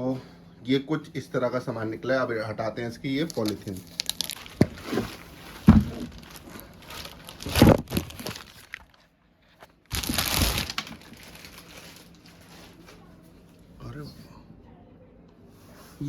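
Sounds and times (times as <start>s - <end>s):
plastic wrapping crinkling: 3.2s - 9.1s, 9.7s - 13.1s.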